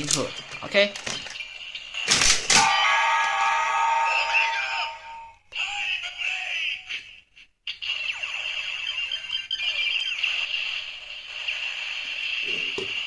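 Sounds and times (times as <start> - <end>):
tinny toy electronic sound effects: 2.6 - 6.0, 7.9 - 12.8.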